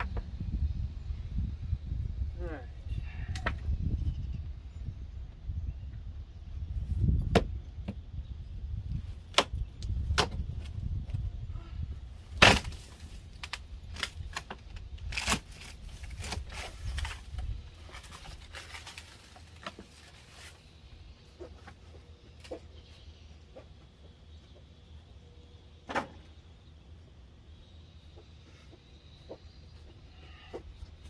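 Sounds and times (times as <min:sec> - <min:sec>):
old wood cracking and tearing: 0:12.3 - 0:20.6.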